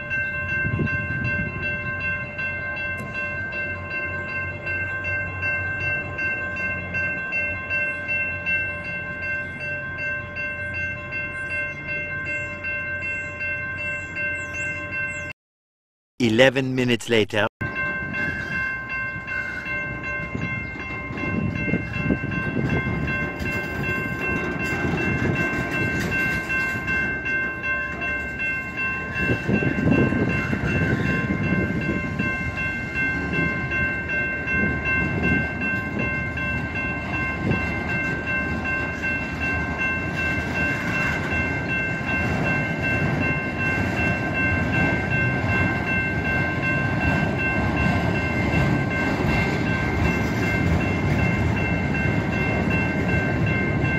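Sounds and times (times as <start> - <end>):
high-pitched ringing tones: 0.0 - 15.4, 17.6 - 53.9
train rumbling past: 17.6 - 53.9.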